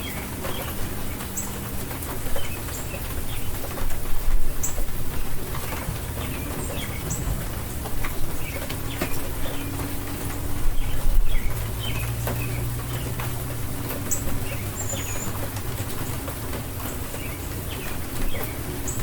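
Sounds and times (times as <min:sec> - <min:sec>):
birds chirping: 0:00.0 - 0:19.0
rain falling: 0:00.0 - 0:19.0.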